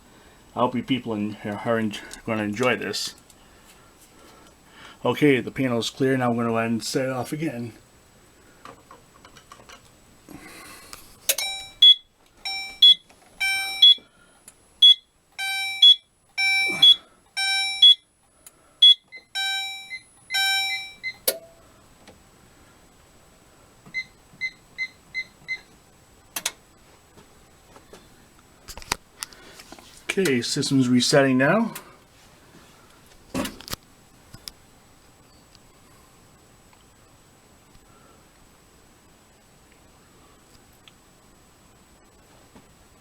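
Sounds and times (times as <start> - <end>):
alarm click: 11.3 - 14.0, 14.8 - 18.0, 18.8 - 21.6
fire alarm pulsing: 11.4 - 14.1, 14.8 - 18.2, 18.8 - 21.3.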